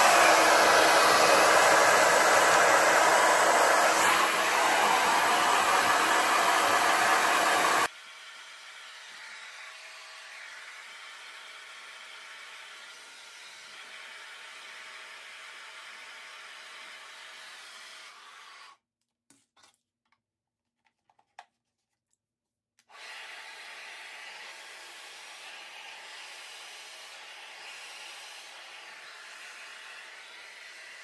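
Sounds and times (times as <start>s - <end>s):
blow dryer rushing hiss: 0.0s - 18.2s, 22.9s - 31.0s
small clicks and handling noises: 19.3s - 22.2s.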